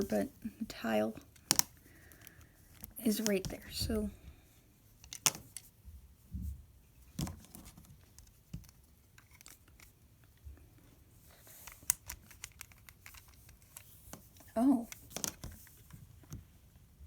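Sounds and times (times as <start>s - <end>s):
plastic bricks clicking and scraping: 11.6s - 13.9s, 14.8s - 15.6s.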